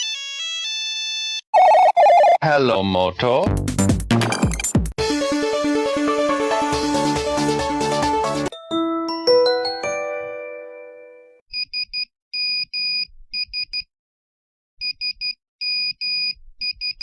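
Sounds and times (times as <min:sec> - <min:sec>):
bell-like electronic melody: 0:08.5 - 0:11.4.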